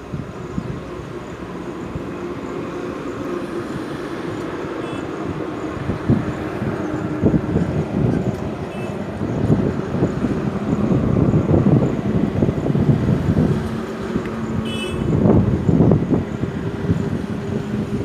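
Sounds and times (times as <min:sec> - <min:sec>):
highway traffic rumble: 0:00.0 - 0:18.0
wind buffeting microphone: 0:00.0 - 0:18.0.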